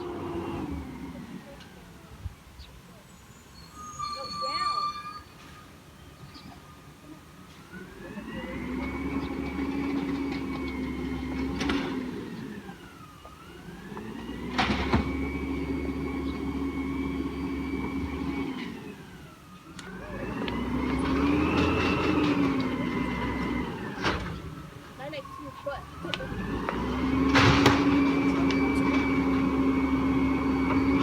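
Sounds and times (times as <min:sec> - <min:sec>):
diesel engine revving: 0:00.0 - 0:02.0, 0:07.7 - 0:31.0
sharp knocks and bangs: 0:27.2 - 0:28.2.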